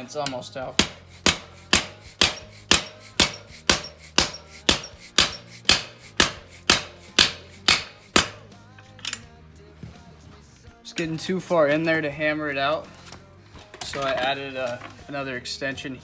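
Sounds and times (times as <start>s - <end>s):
mallet striking metal socket: 0.0s - 9.2s.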